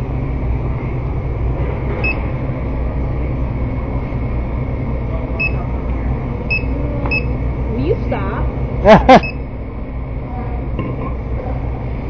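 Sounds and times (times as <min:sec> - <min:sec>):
low store hum: 0:00.0 - 0:12.0
barcode scanner beeping: 0:05.4 - 0:05.6, 0:06.5 - 0:07.4.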